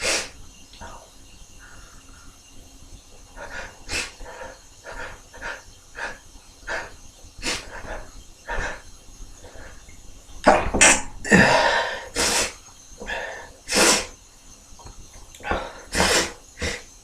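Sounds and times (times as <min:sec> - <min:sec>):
sharp snorts: 0:00.0 - 0:00.4, 0:03.4 - 0:08.8, 0:10.8 - 0:14.2, 0:15.4 - 0:16.9
man gasping and sniffing: 0:11.3 - 0:14.1, 0:15.4 - 0:16.9.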